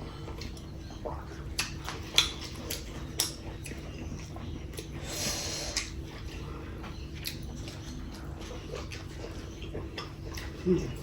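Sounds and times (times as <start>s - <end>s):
chewing with wet clicks: 0.0s - 11.0s
lip smacks: 0.3s - 5.0s, 5.6s - 6.0s.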